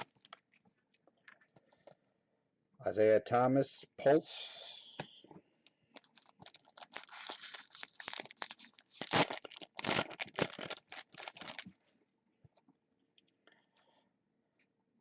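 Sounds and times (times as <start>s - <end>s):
wrapper tearing and crinkling: 6.0s - 11.8s.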